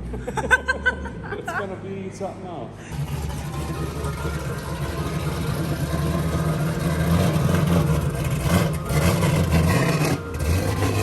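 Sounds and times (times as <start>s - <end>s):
vee eight engine lumpy idle: 2.8s - 11.0s.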